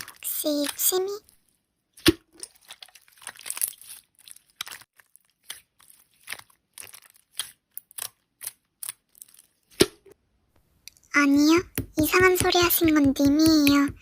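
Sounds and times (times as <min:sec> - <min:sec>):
slime squished by hand: 0:01.9 - 0:10.0.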